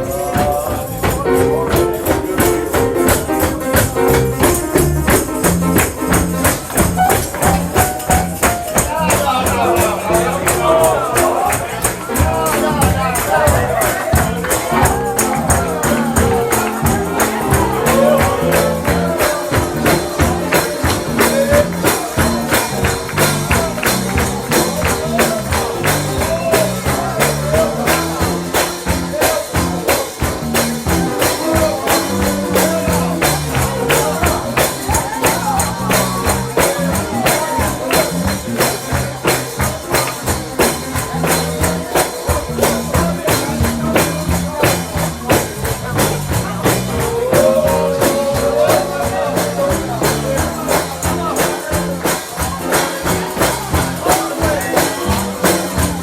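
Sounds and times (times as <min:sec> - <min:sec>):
gospel music: 0:00.0 - 0:56.0
tambourine beat: 0:00.0 - 0:56.0.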